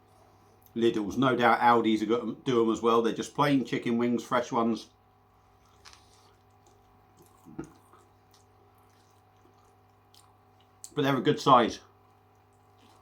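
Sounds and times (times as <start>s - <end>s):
man chewing food: 5.3s - 11.0s, 11.9s - 13.0s.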